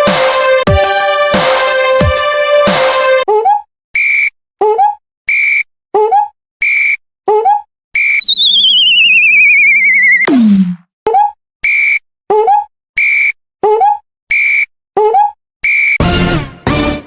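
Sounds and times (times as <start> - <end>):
downward sliding warbling whistle: 8.0 - 10.3
short high electronic beep: 8.2 - 10.3
upward bending blip: 8.2 - 10.8.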